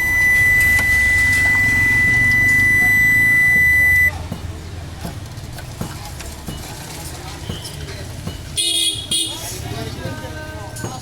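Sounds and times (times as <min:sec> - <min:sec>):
high-pitched electronic beep: 0:00.0 - 0:04.2.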